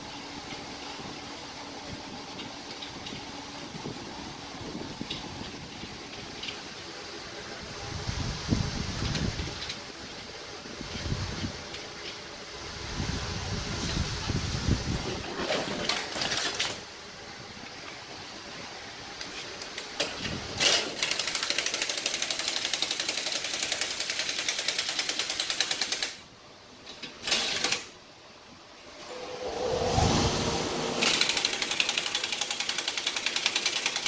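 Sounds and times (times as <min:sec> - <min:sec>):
pneumatic air tool rattling: 0:19.9 - 0:26.2, 0:27.2 - 0:27.9, 0:30.9 - 0:34.0.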